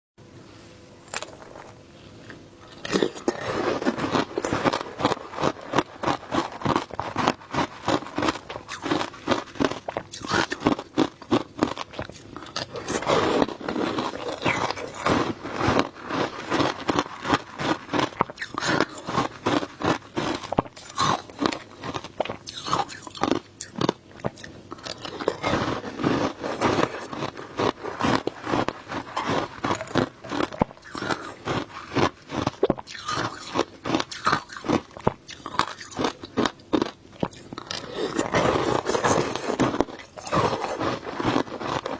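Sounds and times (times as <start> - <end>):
shaved ice crunching: 2.7 - 23.9, 24.8 - 36.2, 37.6 - 41.9.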